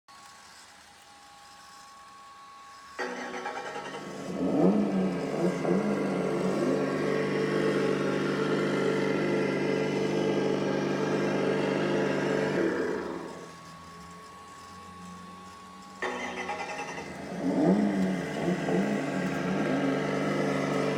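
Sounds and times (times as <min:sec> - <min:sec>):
simulated car engine revving and idling: 0:02.7 - 0:20.9.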